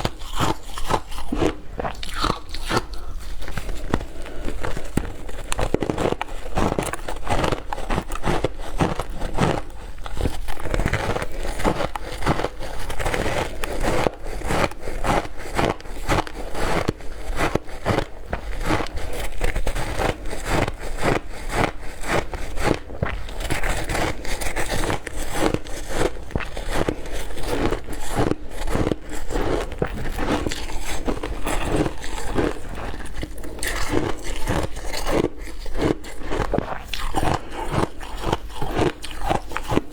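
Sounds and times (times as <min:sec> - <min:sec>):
person crunching ice: 0:00.0 - 0:39.9.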